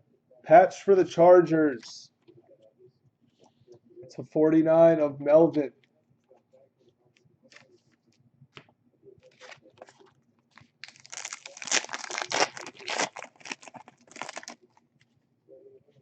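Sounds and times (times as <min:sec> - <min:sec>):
wrapper crinkling and tearing: 0:10.6 - 0:14.8.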